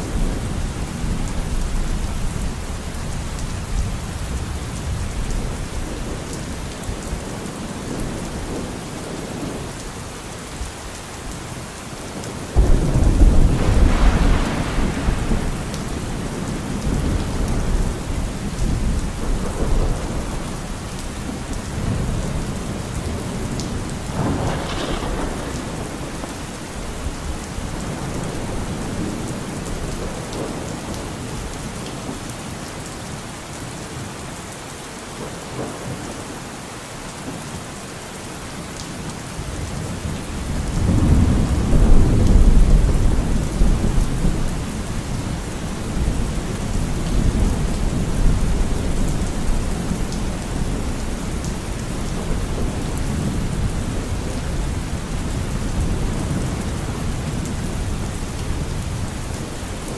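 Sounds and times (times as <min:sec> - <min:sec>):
steady rain: 0:00.0 - 0:59.9
thunder rumbling: 0:12.6 - 0:30.7, 0:39.6 - 0:59.9.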